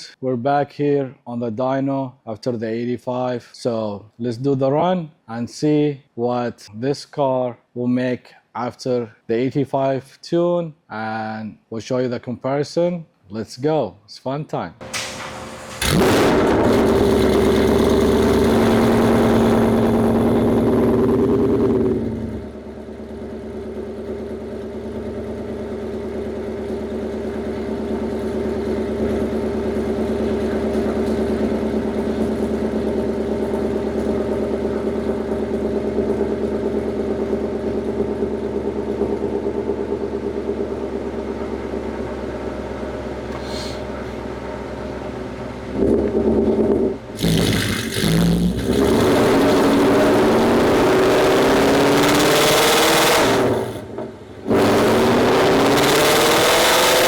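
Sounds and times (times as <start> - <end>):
car engine on a dyno: 14.8 - 57.0.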